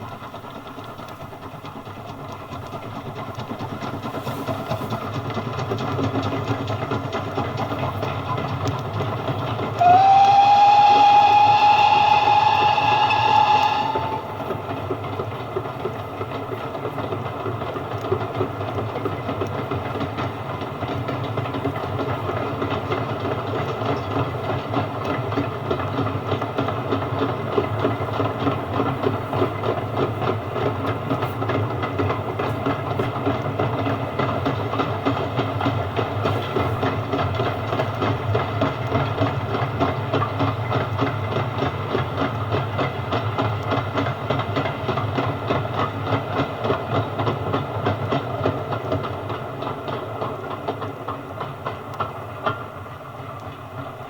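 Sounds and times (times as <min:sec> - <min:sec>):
train rumbling on rails: 0:00.0 - 0:54.0
wheels clickety-clack: 0:00.0 - 0:54.0
steam locomotive whistle: 0:09.8 - 0:15.4.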